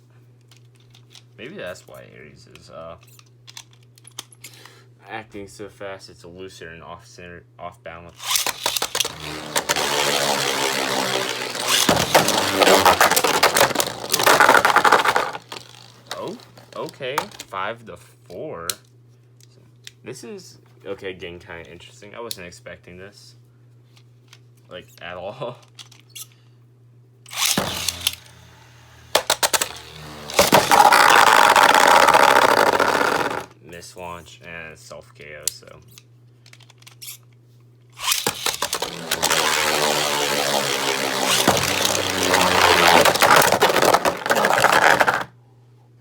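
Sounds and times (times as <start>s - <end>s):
spinning tops whirring: 8.2s - 17.4s, 27.3s - 33.5s, 38.0s - 45.3s
plastic tops clacking together: 8.2s - 17.5s, 27.3s - 28.4s, 29.0s - 33.5s, 38.0s - 45.3s
sharp plastic clicks: 8.2s - 17.5s, 27.3s - 33.5s, 38.0s - 45.3s.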